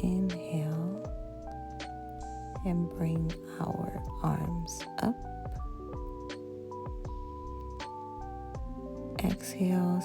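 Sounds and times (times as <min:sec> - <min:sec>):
light regular beat: 0:04.0 - 0:09.5.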